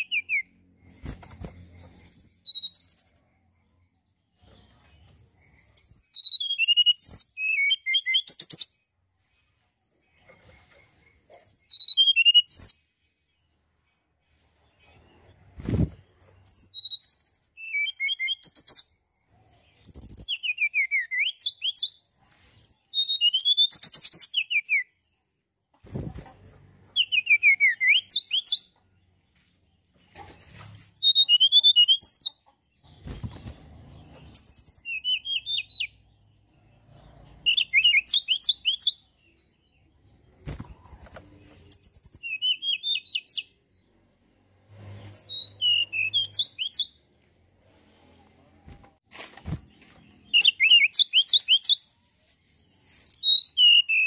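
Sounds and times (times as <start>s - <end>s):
bird singing high phrases: 0.0s - 8.9s, 10.1s - 13.9s, 14.9s - 25.2s, 25.9s - 29.2s, 30.6s - 43.9s, 44.9s - 47.1s, 49.4s - 52.0s, 52.6s - 54.0s.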